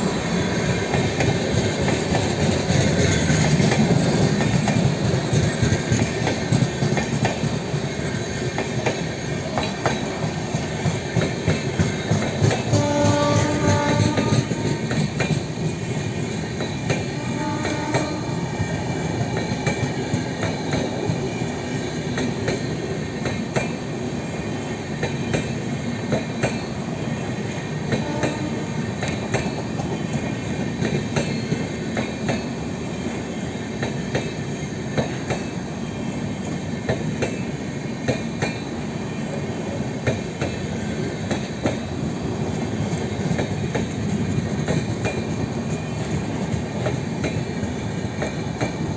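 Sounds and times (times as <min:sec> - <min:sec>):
rumble of train coaches: 0:00.0 - 0:48.9.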